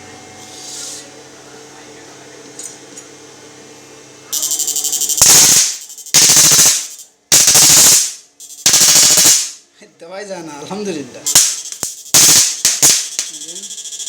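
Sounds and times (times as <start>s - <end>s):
faint electrical hum: 0.0s - 14.0s
rapid pulsing buzz: 4.4s - 9.6s, 11.3s - 14.0s
rattling electric discharge: 4.4s - 9.6s, 11.3s - 13.7s.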